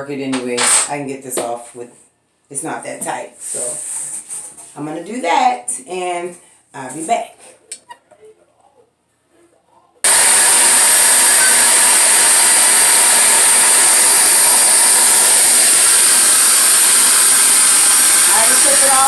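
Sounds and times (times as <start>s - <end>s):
wet dry vac running with whine: 10.1s - 19.0s.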